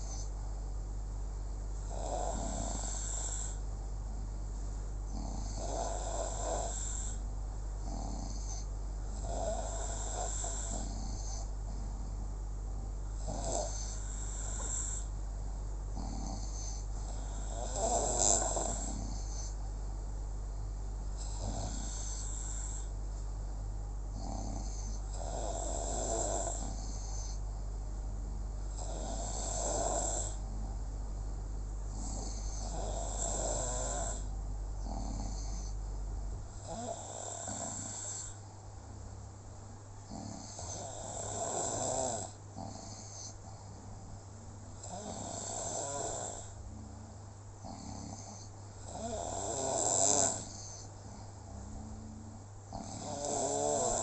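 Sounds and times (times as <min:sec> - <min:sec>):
low electrical hum: 0:00.0 - 0:54.0
person snoring: 0:01.9 - 0:03.6, 0:05.1 - 0:07.2, 0:07.8 - 0:11.5, 0:13.2 - 0:15.1, 0:16.0 - 0:19.6, 0:21.2 - 0:22.9, 0:24.2 - 0:27.4, 0:28.7 - 0:30.7, 0:31.9 - 0:35.8, 0:36.6 - 0:38.4, 0:40.1 - 0:43.4, 0:44.8 - 0:47.0, 0:47.6 - 0:54.0.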